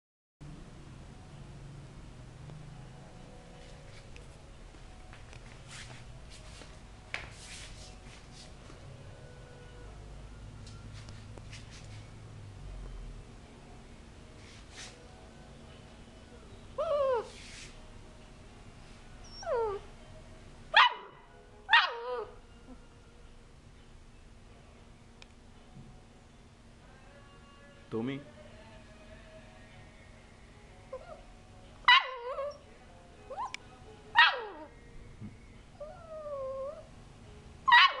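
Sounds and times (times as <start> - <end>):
puppy whining: 16.8 - 17.5, 19.2 - 19.9, 21.7 - 22.8, 30.9 - 31.3, 31.9 - 32.7, 33.3 - 33.6, 34.2 - 36.9
puppy yip: 20.8 - 22.4, 31.9 - 32.6, 33.3 - 34.7, 37.7 - 38.0.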